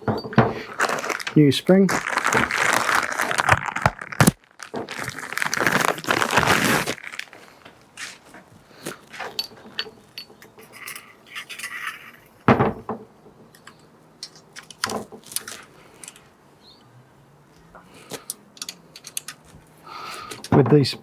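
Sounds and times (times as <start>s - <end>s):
metal parts clinking and knocking: 0.0s - 1.4s, 9.2s - 12.9s, 18.2s - 19.6s.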